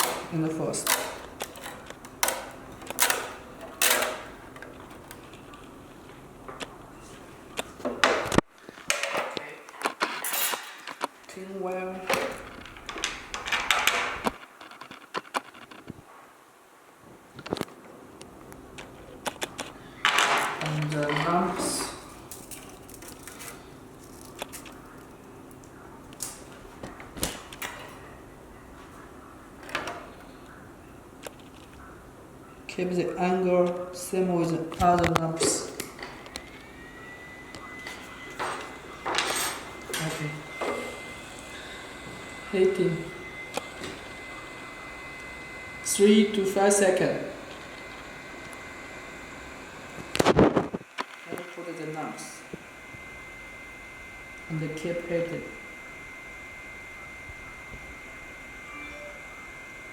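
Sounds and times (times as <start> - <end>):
hand tools clicking and tapping: 0.0 - 5.7
faint steady hum: 15.6 - 59.9.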